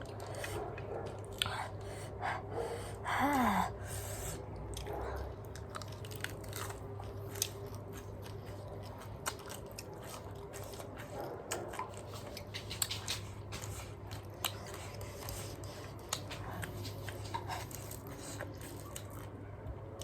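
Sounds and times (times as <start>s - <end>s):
steady low hum: 0.0s - 20.0s
cabbage being chewed and crunched: 4.5s - 20.0s.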